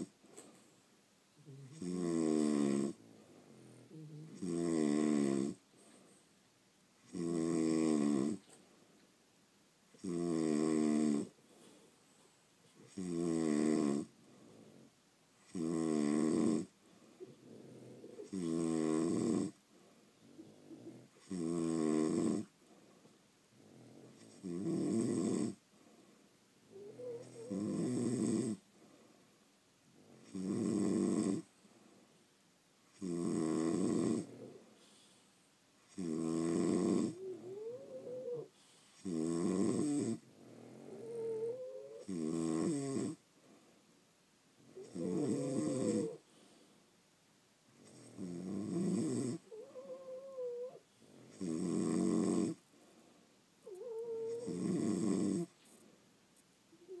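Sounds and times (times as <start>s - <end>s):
dog snoring: 1.4s - 5.6s, 7.0s - 8.5s, 10.0s - 11.4s, 12.8s - 19.6s, 20.2s - 22.5s, 23.6s - 25.6s, 26.7s - 28.6s, 30.1s - 31.5s, 32.9s - 35.2s, 35.9s - 43.2s, 44.7s - 46.4s, 47.8s - 52.6s, 53.6s - 55.6s, 56.8s - 57.0s.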